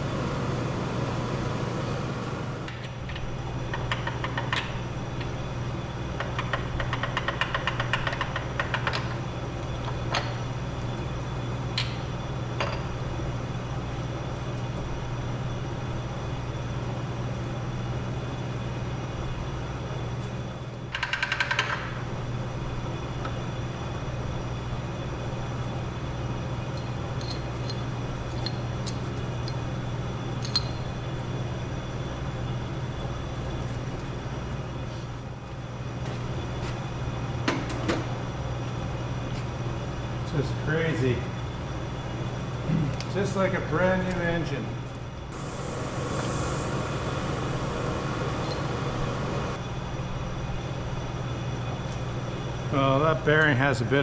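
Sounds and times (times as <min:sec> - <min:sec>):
low hum of shop machinery: 0:00.0 - 0:54.0.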